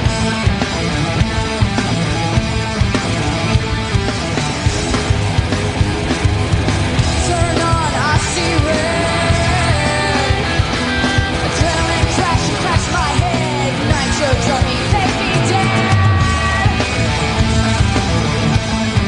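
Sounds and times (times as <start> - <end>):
loud rock music: 0.0 - 19.0
lead vocal singing: 7.1 - 18.3.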